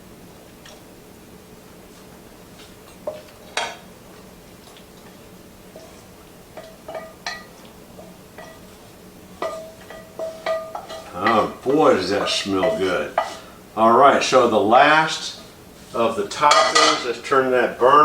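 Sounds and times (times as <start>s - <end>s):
utensil clinking against plates: 2.6s - 3.9s, 5.7s - 8.8s, 9.4s - 17.5s.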